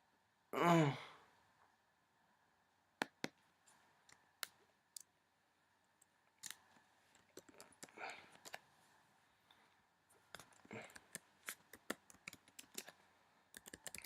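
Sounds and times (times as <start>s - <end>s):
mouse and keyboard clicks: 7.2s - 8.6s, 10.3s - 14.0s.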